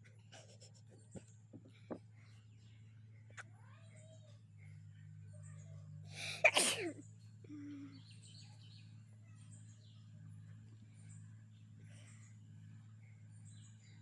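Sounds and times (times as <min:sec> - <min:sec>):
person sneezing: 0:06.3 - 0:06.9.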